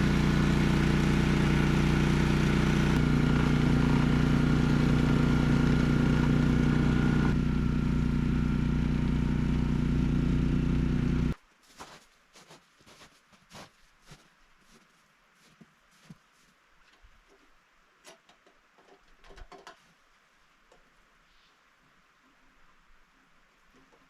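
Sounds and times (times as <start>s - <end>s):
snowblower engine running: 0.0s - 11.4s.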